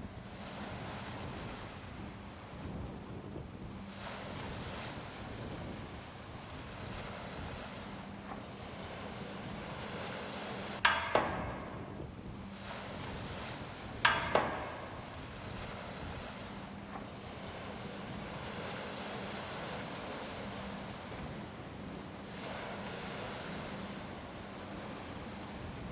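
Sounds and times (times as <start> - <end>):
surf: 0.0 - 25.9
wind noise on microphone: 0.0 - 25.9
sharp ringing knocks: 9.3 - 17.2.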